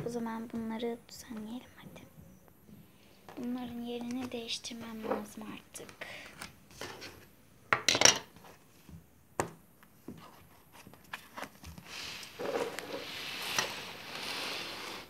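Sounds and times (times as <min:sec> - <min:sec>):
rustling scrape: 0:10.2 - 0:15.0.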